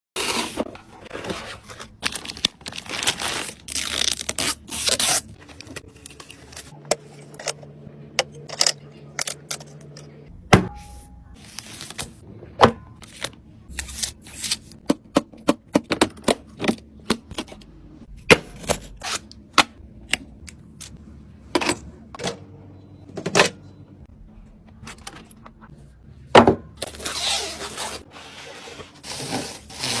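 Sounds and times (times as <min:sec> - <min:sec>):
packaging rustling: 0:00.7 - 0:06.7.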